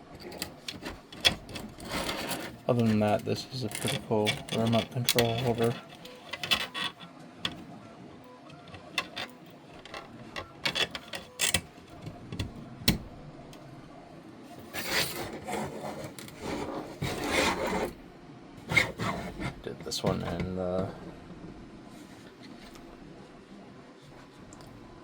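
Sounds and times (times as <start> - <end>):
plastic parts scraping and rubbing: 0.1 - 7.7, 8.5 - 13.0, 14.5 - 18.0, 18.6 - 21.0
plastic parts clicking and tapping: 0.2 - 7.7, 8.5 - 13.1.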